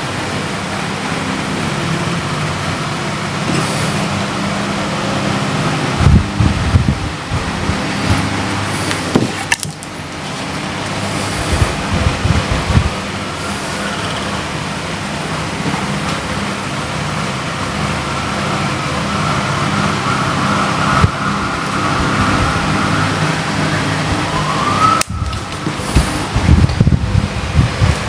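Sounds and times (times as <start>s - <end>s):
road traffic rumble: 0.0s - 28.0s
high siren tone: 17.5s - 26.6s.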